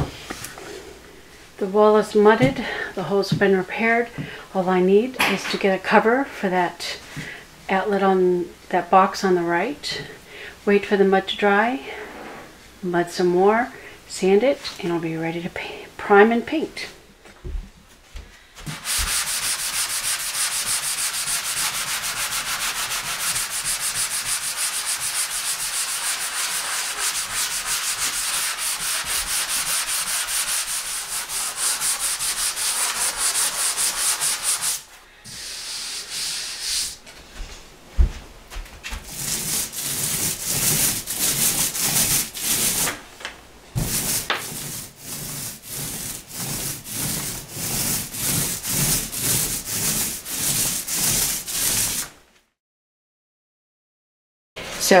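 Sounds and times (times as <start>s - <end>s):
sanding drywall: 18.6s - 37.0s, 39.0s - 43.0s, 43.8s - 52.2s.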